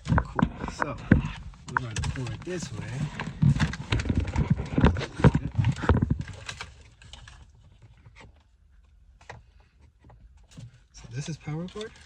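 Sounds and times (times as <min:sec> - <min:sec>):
power cord handling knocks and rubbing: 0:00.0 - 0:06.6.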